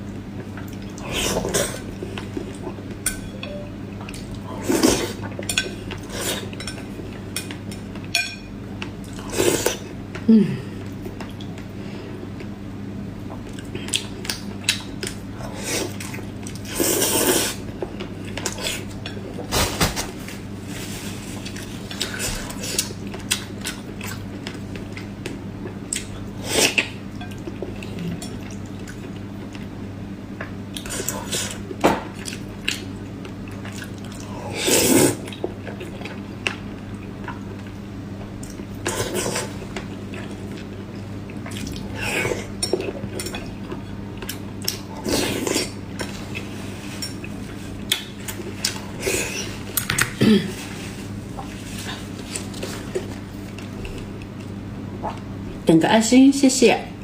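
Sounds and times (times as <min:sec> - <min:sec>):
steady low hum: 0:00.0 - 0:57.0
utensils clinking against a bowl: 0:03.0 - 0:03.7, 0:05.4 - 0:08.5.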